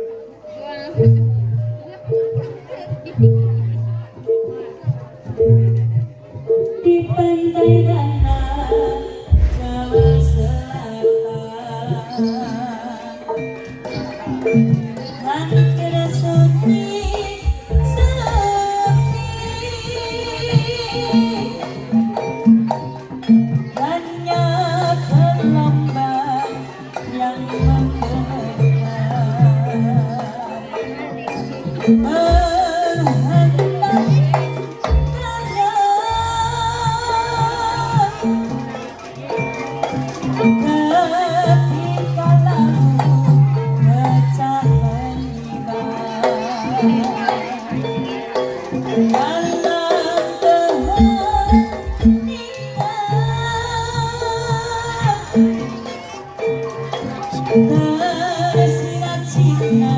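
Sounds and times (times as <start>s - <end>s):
drum strokes: 0.9s - 12.8s, 13.4s - 59.9s
woman singing: 6.8s - 13.4s, 15.2s - 21.9s, 23.7s - 31.2s, 31.9s - 38.8s, 40.6s - 47.6s, 49.0s - 55.8s, 57.4s - 59.9s.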